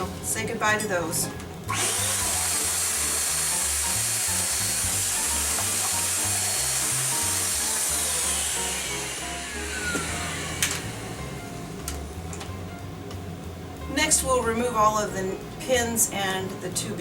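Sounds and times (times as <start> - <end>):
background music: 0.0 - 17.0
vacuum cleaner running: 1.7 - 12.0.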